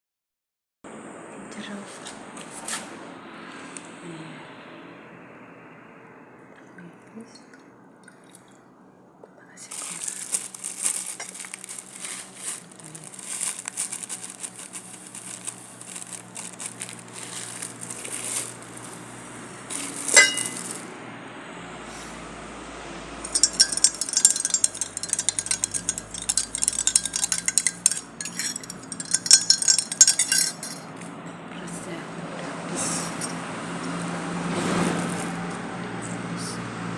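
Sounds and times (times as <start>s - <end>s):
spoon stirring in glass: 9.8s - 19.0s, 19.7s - 20.9s, 23.2s - 30.9s
spoon clinking glass: 19.7s - 20.9s, 23.2s - 30.9s
spoon scraping glass: 19.7s - 20.9s, 23.2s - 30.9s.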